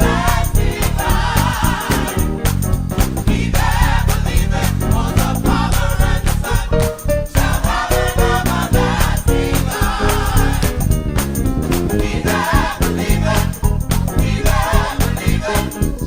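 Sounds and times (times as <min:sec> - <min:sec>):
gospel choir singing: 0:00.0 - 0:10.9, 0:11.7 - 0:16.0
band playing: 0:01.6 - 0:03.5, 0:10.7 - 0:13.6.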